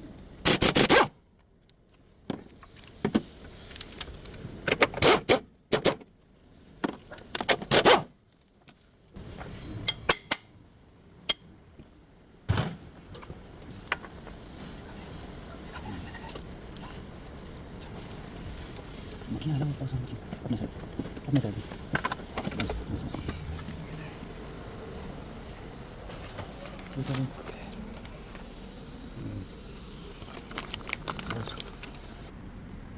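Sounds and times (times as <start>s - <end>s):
metal tools clinking and scraping: 9.5s - 10.6s.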